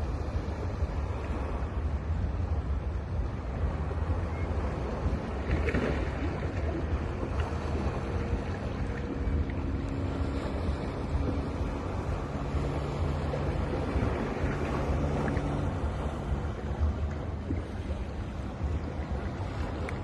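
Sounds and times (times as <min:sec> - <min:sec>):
faint steady hum: 0:00.0 - 0:20.0
sea waves washing onto beach: 0:00.0 - 0:20.0
wind buffeting microphone: 0:00.0 - 0:20.0.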